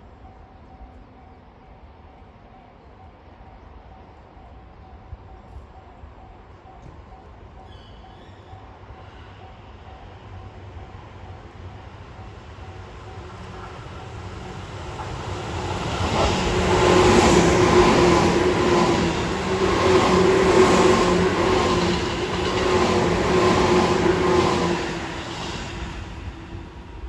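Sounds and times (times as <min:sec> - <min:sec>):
electric train whine: 0:00.0 - 0:27.0
train wheels on rails: 0:05.4 - 0:27.0.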